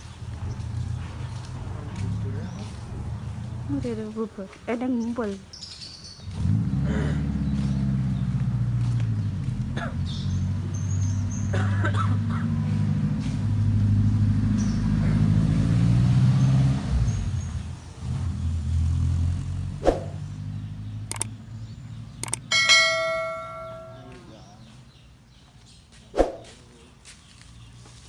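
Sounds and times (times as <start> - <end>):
engine rumbling: 17.1 - 24.3.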